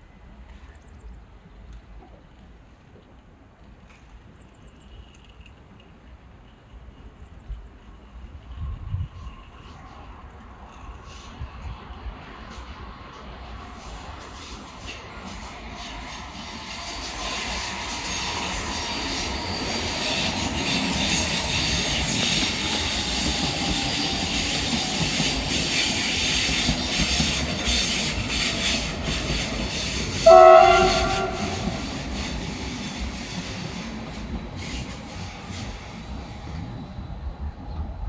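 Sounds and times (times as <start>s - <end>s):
electric train passing: 4.8s - 38.0s
train horn blast: 30.2s - 32.0s.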